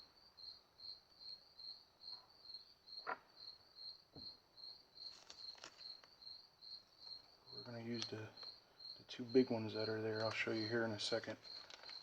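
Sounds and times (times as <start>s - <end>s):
cricket chirping: 0.0s - 12.0s
faint clicks of small parts: 7.9s - 8.6s, 11.3s - 12.0s.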